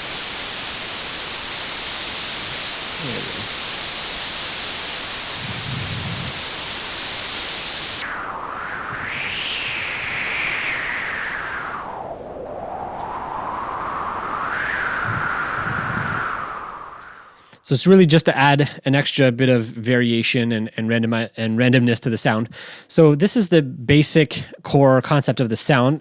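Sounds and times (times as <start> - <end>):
synthesized wind hiss: 0.0 - 17.4.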